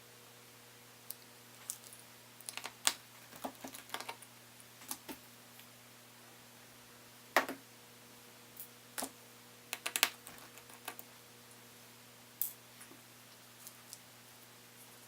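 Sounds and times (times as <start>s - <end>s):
hand tools clicking on laptop parts: 9.8s - 11.0s.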